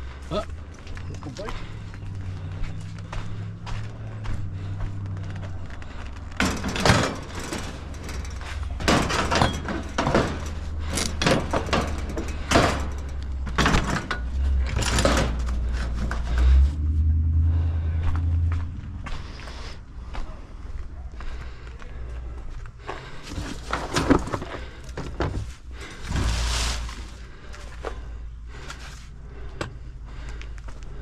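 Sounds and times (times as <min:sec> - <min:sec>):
steady low hum: 0:00.0 - 0:31.0
scrap metal clanking: 0:06.3 - 0:16.8, 0:23.2 - 0:28.0.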